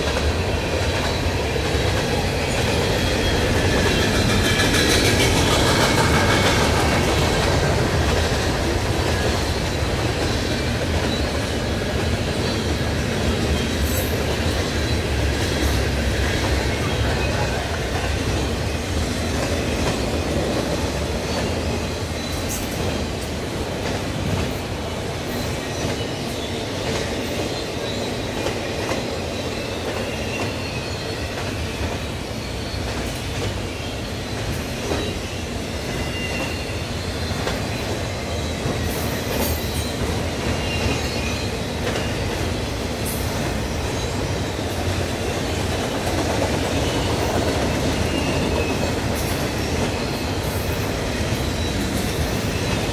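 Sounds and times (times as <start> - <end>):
train wheels rumbling on rail: 0.0 - 52.9
faint high wheel squeal: 29.2 - 42.8.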